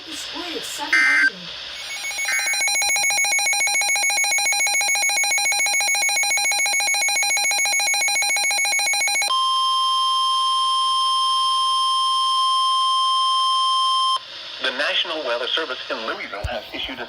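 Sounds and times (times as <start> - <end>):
electronic alarm beeping: 0.9 - 14.2
steady warning alarm tone: 0.9 - 14.2.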